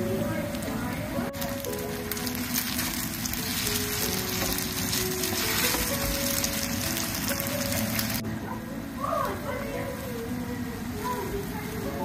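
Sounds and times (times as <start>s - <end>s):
chicken sizzling in hot oil: 1.3s - 8.2s.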